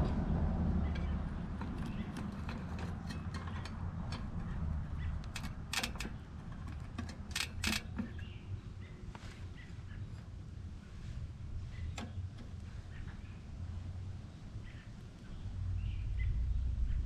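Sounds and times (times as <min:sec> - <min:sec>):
bicycle chain links clinking: 0:01.7 - 0:08.2.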